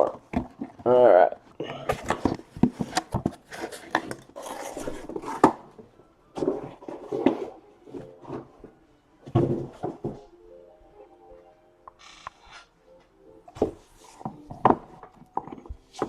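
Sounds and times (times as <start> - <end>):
cards and packaging rustling: 1.9 - 5.7.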